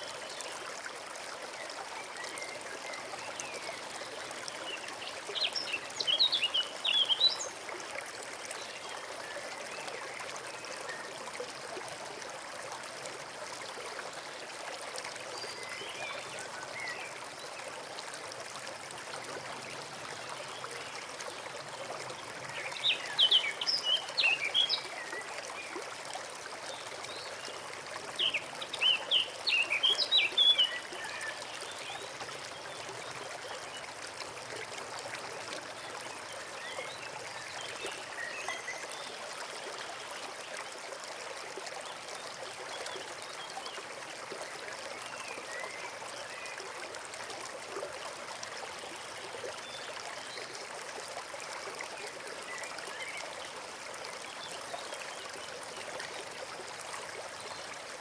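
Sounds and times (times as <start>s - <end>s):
stream trickling: 0.0s - 58.0s.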